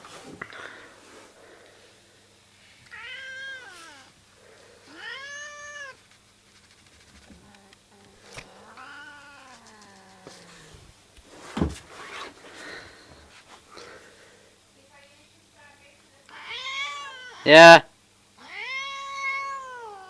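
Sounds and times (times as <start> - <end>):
cat meowing: 2.9 - 4.1, 4.9 - 6.0, 7.4 - 10.7, 16.3 - 17.6, 18.4 - 20.0
cat yowling: 2.9 - 4.1, 4.9 - 6.0, 8.5 - 10.8, 16.3 - 17.8, 18.4 - 20.0.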